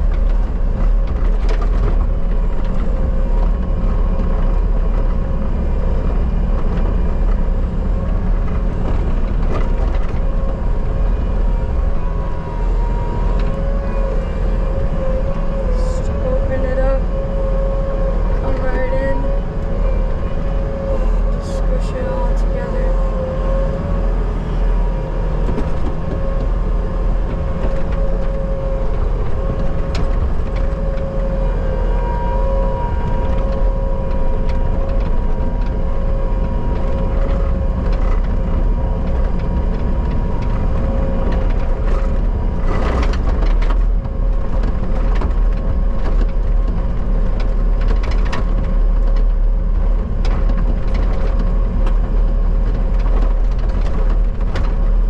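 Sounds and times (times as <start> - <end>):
skid steer engine running: 0.0 - 55.0
steady whine: 0.0 - 55.0
rough crunching noise: 23.0 - 55.0.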